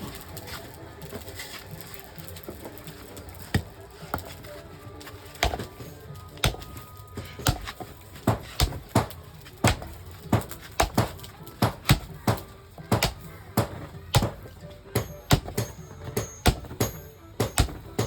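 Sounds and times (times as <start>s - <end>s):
background music: 0.0s - 18.0s
tool striking sharply: 15.0s - 18.0s.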